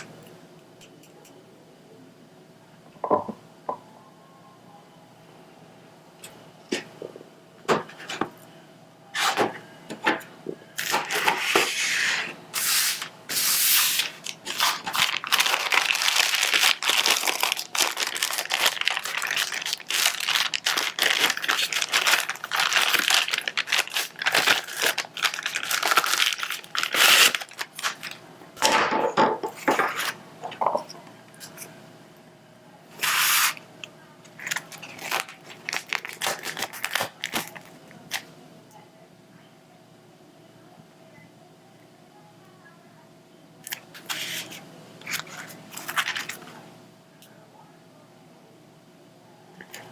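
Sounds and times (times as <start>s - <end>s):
plastic packaging crinkling: 12.6s - 28.2s, 34.3s - 38.2s, 43.7s - 46.6s.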